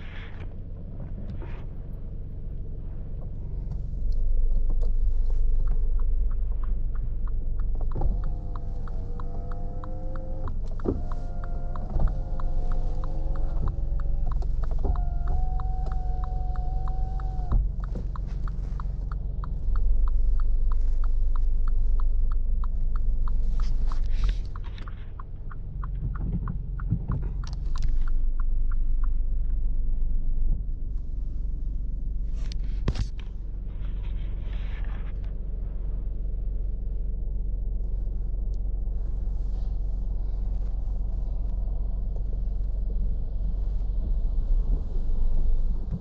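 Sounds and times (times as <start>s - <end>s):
car engine idling: 0.0s - 46.0s
regular ticking: 4.1s - 29.8s.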